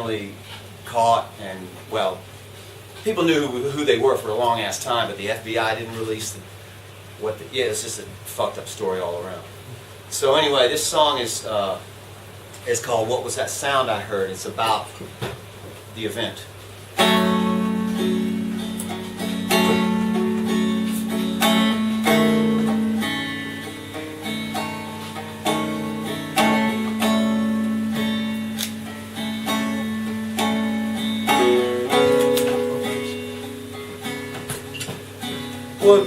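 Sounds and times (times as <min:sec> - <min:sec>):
guitar strummed chords: 0:17.0 - 0:36.0.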